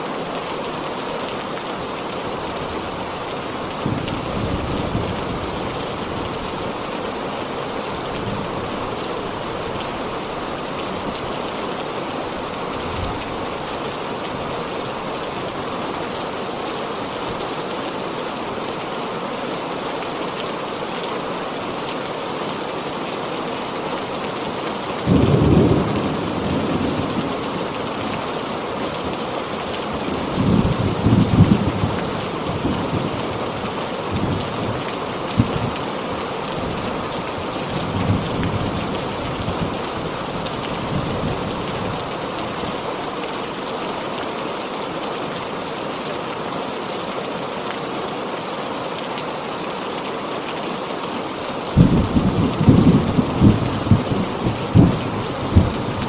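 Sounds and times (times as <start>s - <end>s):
heavy rain pouring: 0.0s - 56.0s
thunder rumbling: 51.8s - 56.0s.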